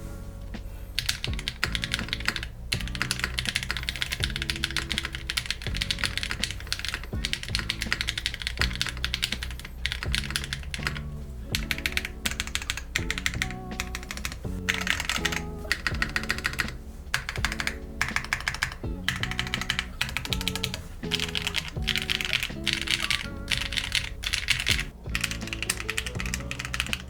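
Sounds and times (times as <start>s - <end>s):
background music: 0.0s - 27.0s
mechanical keyboard typing: 1.0s - 11.0s, 11.6s - 27.0s.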